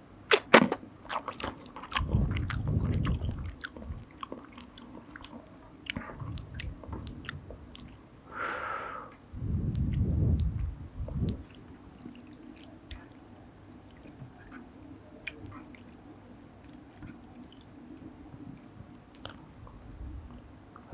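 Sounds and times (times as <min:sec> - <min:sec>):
chewing and biting noodles: 0:01.1 - 0:08.0, 0:09.7 - 0:18.1.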